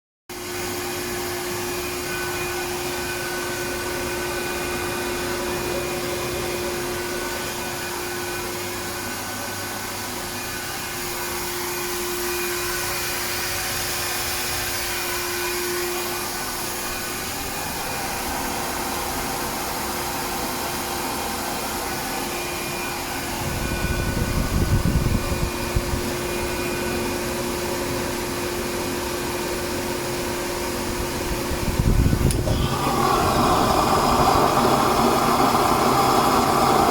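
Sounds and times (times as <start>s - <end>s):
stove blower hiss: 31.0s - 36.9s.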